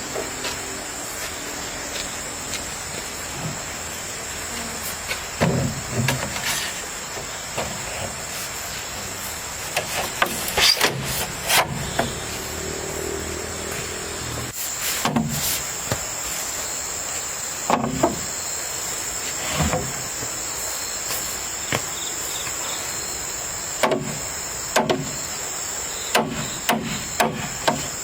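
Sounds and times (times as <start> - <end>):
high-pitched insect chorus: 0.0 - 28.0.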